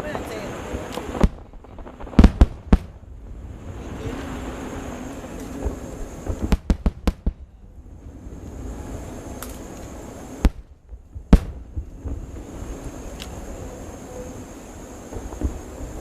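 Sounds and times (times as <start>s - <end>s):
background rumble: 0.0s - 16.0s
fireworks bangs: 0.0s - 16.0s.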